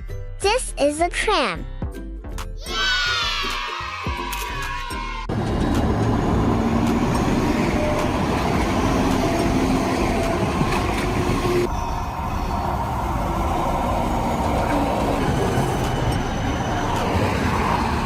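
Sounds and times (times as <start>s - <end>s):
tram running on rails: 5.3s - 18.0s.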